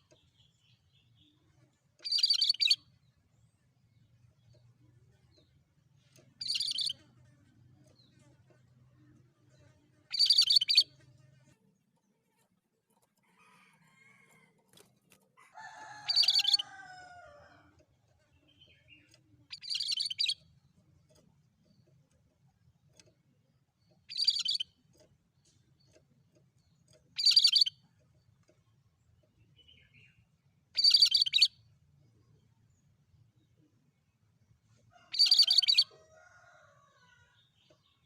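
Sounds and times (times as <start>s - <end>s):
bird harsh high-pitched calls: 2.0s - 2.8s, 16.0s - 16.8s, 19.5s - 20.4s, 24.1s - 24.6s, 27.2s - 27.7s, 30.8s - 31.5s, 35.1s - 36.0s.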